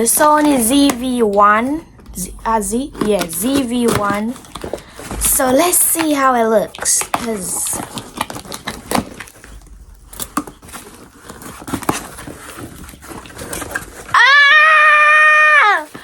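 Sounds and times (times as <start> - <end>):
package rustling and clicks: 2.9 - 14.2
high-pitched held cry: 14.1 - 16.0.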